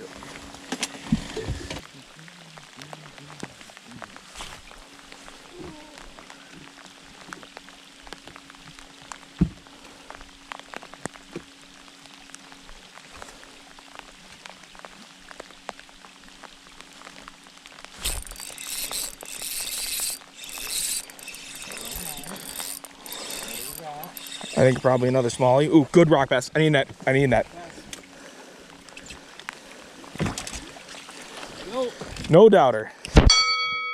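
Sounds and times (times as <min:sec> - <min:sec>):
light rain dripping: 0:00.0 - 0:32.3
faint steady hum: 0:00.0 - 0:33.1
fishing reel whirring: 0:18.0 - 0:25.7.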